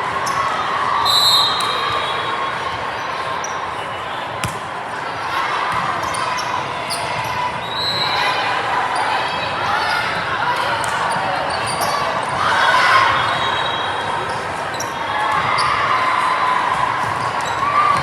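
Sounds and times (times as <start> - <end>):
murmuring crowd in gym: 0.0 - 18.0
sneaker squeaks: 0.2 - 2.5, 6.0 - 8.3, 9.7 - 12.3, 13.0 - 15.9.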